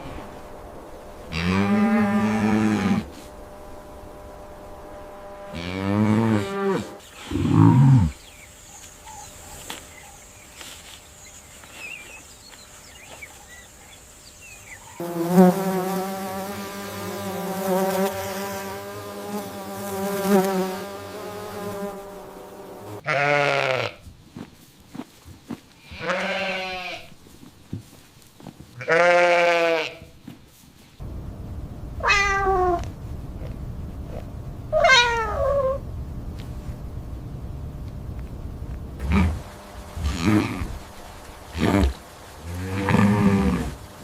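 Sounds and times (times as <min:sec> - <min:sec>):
goats bleating: 0:23.0 - 0:24.0, 0:25.8 - 0:27.1, 0:28.8 - 0:30.0, 0:39.0 - 0:40.9.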